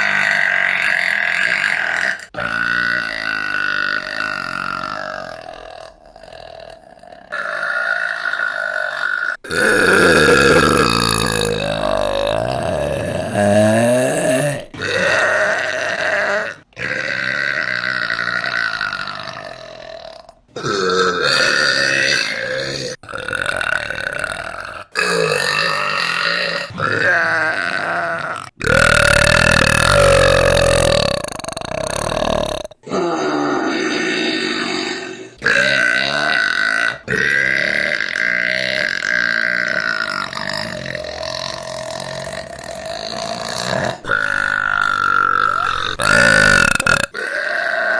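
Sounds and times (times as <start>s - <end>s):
woman burping: 19.3s - 24.4s, 25.0s - 47.9s.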